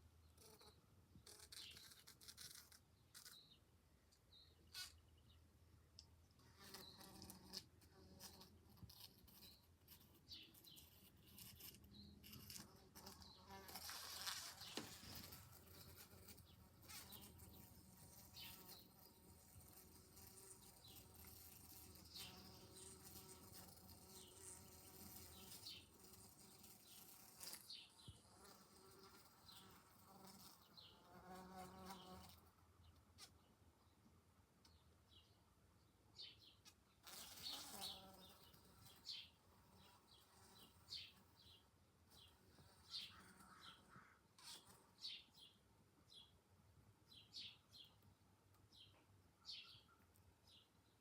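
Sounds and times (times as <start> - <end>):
bee buzzing: 6.4 - 9.4, 12.3 - 32.4, 37.0 - 41.2.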